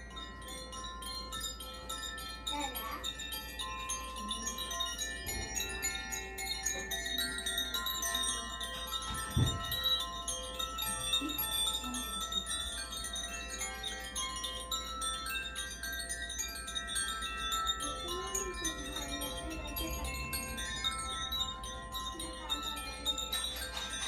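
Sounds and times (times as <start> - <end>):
chimes ringing: 0.0 - 24.0
low thump: 9.2 - 9.8.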